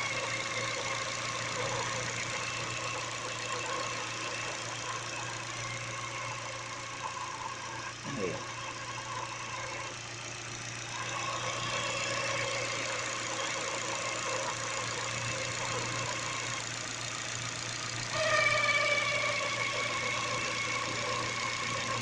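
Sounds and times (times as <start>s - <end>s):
car engine idling: 0.0s - 22.0s
timing belt whine: 0.0s - 22.0s.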